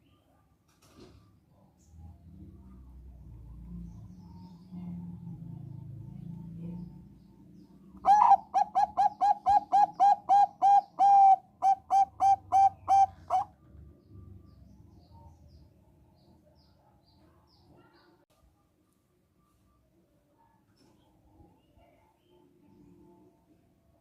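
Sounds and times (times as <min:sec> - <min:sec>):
dove cooing: 0:08.0 - 0:13.5.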